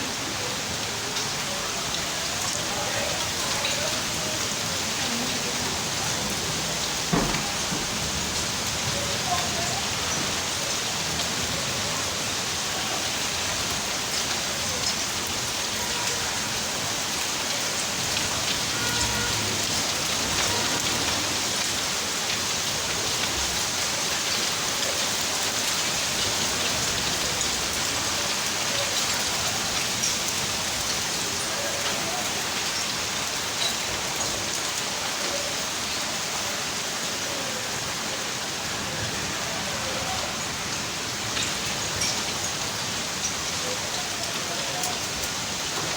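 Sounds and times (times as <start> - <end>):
steady rain pattering: 0.0 - 45.9.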